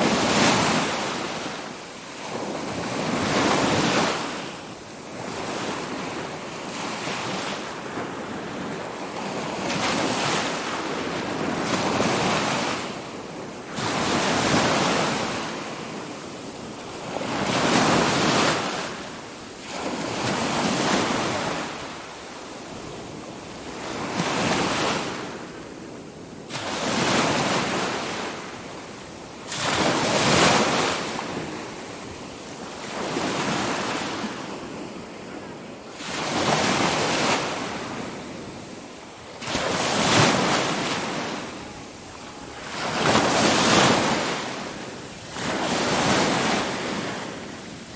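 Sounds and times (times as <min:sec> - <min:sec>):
ocean waves breaking: 0:29.4 - 0:47.9.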